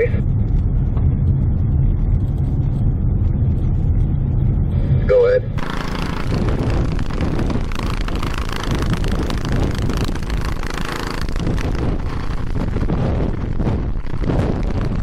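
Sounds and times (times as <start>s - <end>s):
strong wind buffeting microphone: 5.6s - 15.0s.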